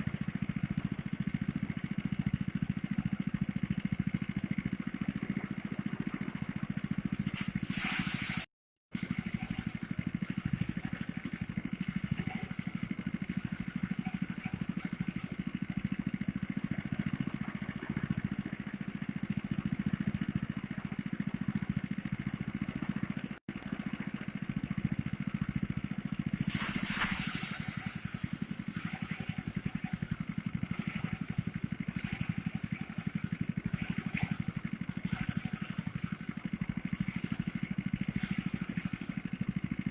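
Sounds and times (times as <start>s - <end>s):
thresher engine running: 0.0s - 39.9s
short hissing rush: 7.2s - 8.4s, 26.4s - 28.4s.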